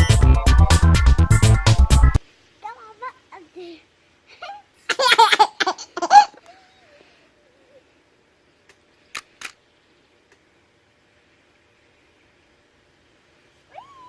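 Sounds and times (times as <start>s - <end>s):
sharp clicks: 8.6s - 9.6s
child squealing and warbling: 13.7s - 14.0s.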